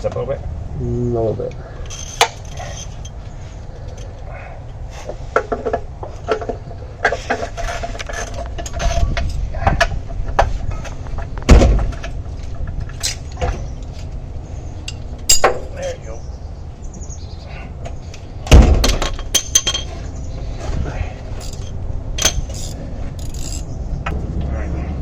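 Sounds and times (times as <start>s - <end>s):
hand tools clinking on metal: 1.9s - 3.2s, 14.9s - 15.7s, 19.0s - 20.0s, 21.4s - 23.7s
heavy thump: 11.4s - 12.0s, 18.4s - 19.1s.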